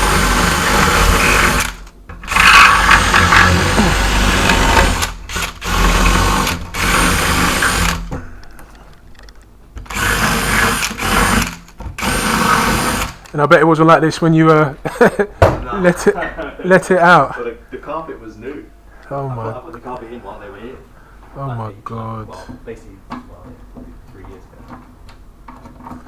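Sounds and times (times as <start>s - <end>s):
power drill running: 0.0s - 8.1s, 9.8s - 13.3s.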